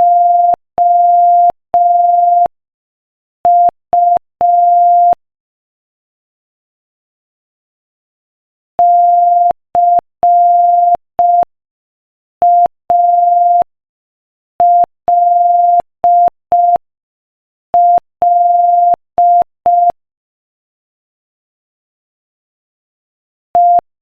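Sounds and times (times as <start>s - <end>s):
morse code beeps: 0.0s - 2.5s, 12.4s - 13.7s, 17.8s - 20.0s, 23.6s - 23.9s.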